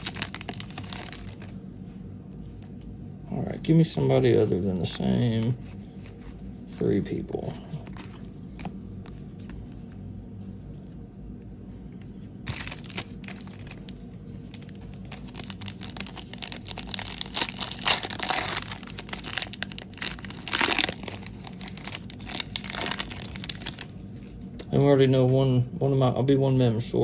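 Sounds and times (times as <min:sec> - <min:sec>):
plastic wrapper crinkling and tearing: 0:00.0 - 0:01.6, 0:12.5 - 0:24.0.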